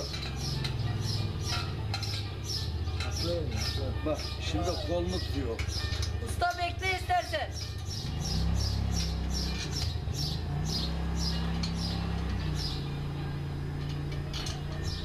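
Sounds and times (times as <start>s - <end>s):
bird chirping: 0.0s - 6.2s, 7.5s - 13.2s.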